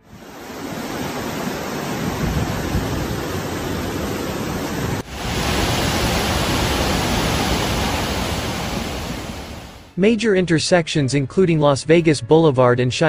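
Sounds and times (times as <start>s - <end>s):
floodwater rushing: 0.0s - 9.9s.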